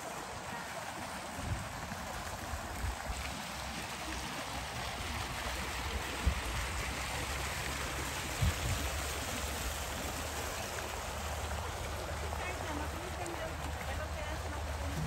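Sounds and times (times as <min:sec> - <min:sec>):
running water rushing: 0:00.0 - 0:15.0.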